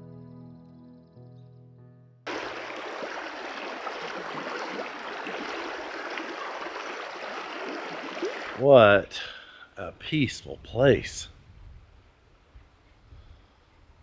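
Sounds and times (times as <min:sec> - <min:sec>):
stream water babbling: 0:02.3 - 0:08.7.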